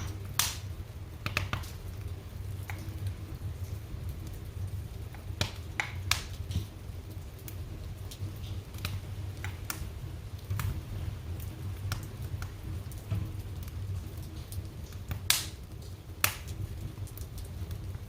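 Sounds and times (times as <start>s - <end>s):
fire crackling and popping: 0.0s - 18.0s
low rumble of flames: 0.0s - 18.0s.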